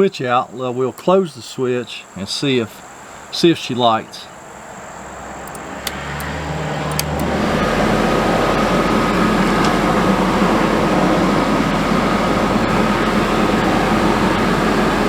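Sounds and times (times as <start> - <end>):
furnace blower fan running: 4.6 - 15.0
light clicks: 5.4 - 7.4.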